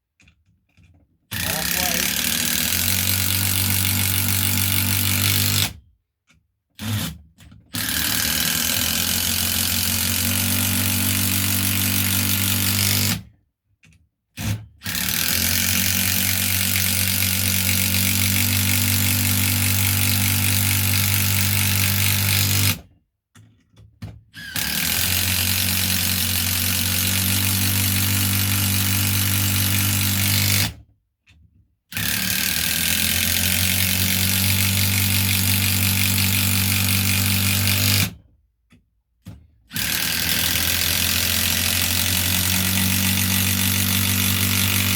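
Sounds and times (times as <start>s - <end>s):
impact driver rattling: 1.3s - 5.8s, 39.2s - 44.9s.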